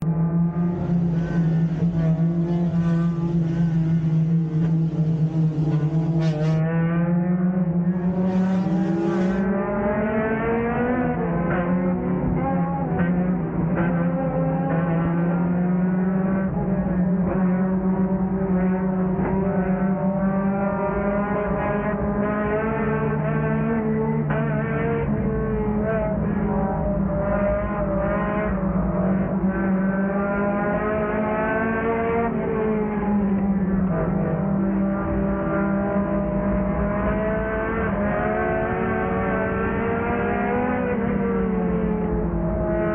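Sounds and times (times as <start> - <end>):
car engine at high revs: 0.0 - 42.9.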